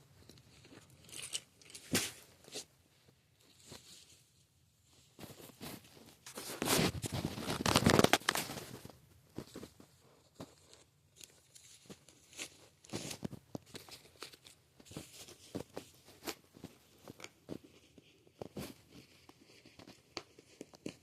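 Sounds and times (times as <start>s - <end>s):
cards and plastic crinkling: 5.2s - 21.0s.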